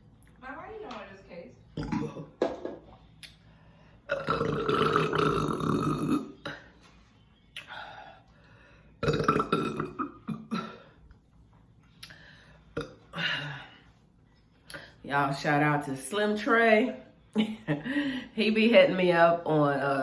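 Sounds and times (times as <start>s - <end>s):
woman belching: 1.8s - 2.4s, 4.1s - 6.6s, 9.0s - 10.9s, 12.8s - 13.6s.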